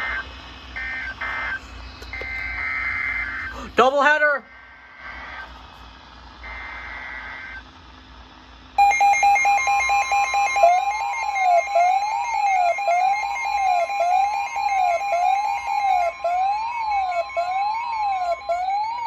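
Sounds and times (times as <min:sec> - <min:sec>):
alarm beeps and warble: 0:00.0 - 0:03.6, 0:06.4 - 0:07.7, 0:08.8 - 0:19.0
steady warning tone: 0:00.0 - 0:05.6, 0:06.3 - 0:07.8, 0:08.7 - 0:19.0.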